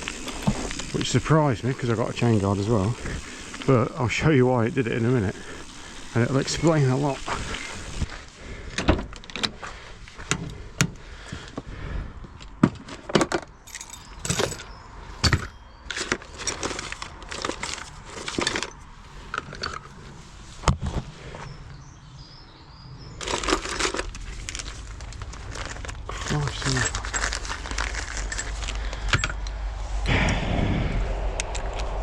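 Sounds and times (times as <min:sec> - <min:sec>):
metallic clinks and rattles: 0:13.6 - 0:19.9, 0:25.4 - 0:29.5
rustling: 0:23.2 - 0:30.0.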